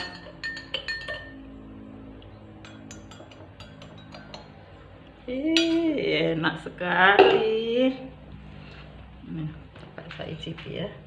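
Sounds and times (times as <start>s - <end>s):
metal spoon clinking against cup: 0.0s - 1.4s, 2.6s - 4.6s.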